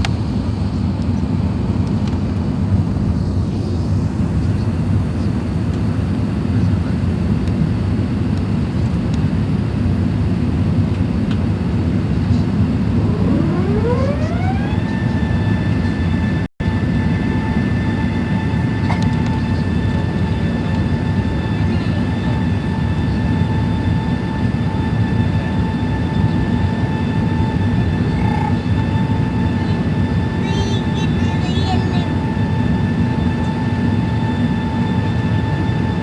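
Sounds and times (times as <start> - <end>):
aircraft cabin rumble: 10.2 - 36.0
rising whine: 11.4 - 36.0.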